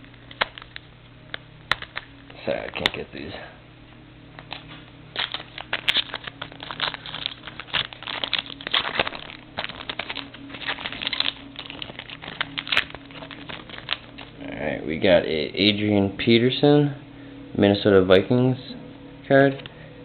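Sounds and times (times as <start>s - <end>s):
foil wrapper crinkling: 0.0s - 0.9s, 1.7s - 3.0s, 4.4s - 14.5s.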